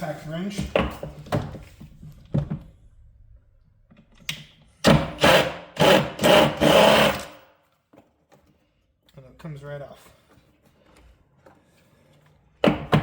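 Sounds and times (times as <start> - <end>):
impact wrench hammering: 4.8 - 7.4.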